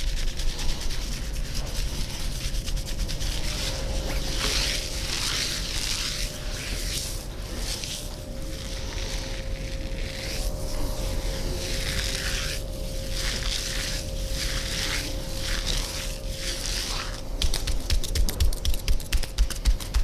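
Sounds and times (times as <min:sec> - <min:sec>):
hands rubbing skin or hair: 0:00.0 - 0:20.0
rapid percussive tapping: 0:17.4 - 0:20.0.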